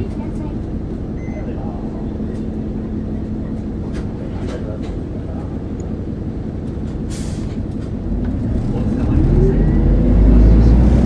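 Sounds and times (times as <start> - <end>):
bus engine running: 0.0 - 11.0.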